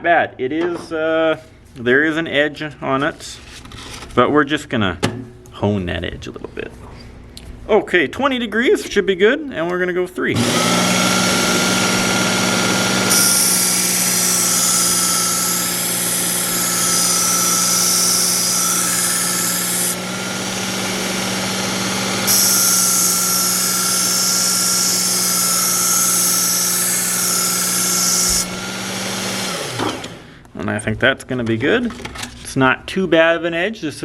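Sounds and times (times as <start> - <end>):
belt knife sharpener running: 10.4 - 30.2.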